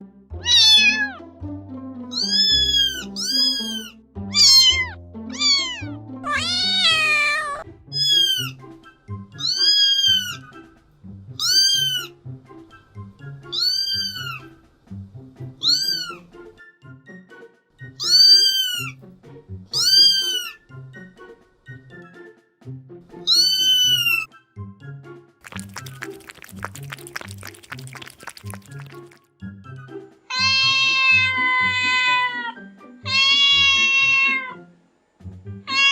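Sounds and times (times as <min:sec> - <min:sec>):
cat meowing: 0:00.4 - 0:01.2, 0:02.1 - 0:08.6, 0:09.4 - 0:10.4, 0:11.4 - 0:12.1, 0:13.5 - 0:14.5, 0:15.6 - 0:16.2, 0:18.0 - 0:19.0, 0:19.8 - 0:20.6, 0:23.2 - 0:24.3, 0:30.3 - 0:34.6, 0:35.7 - 0:35.9.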